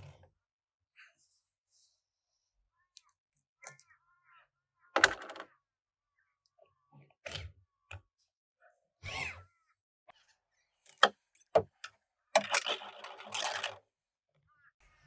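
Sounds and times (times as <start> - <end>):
metal parts rattling and scraping: 12.5 - 13.8.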